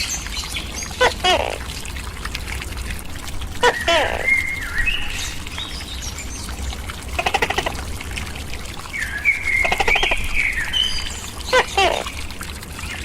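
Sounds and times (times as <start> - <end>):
trickling water: 0.0 - 13.0
whistling bird calls: 3.6 - 5.4, 9.0 - 11.9.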